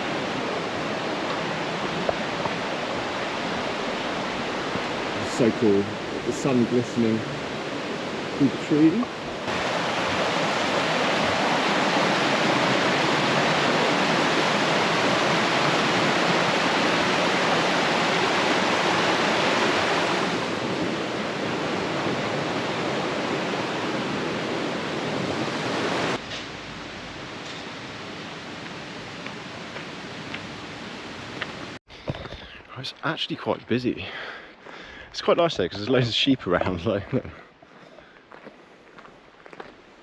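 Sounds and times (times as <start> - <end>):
rushing mountain stream: 0.0 - 31.8.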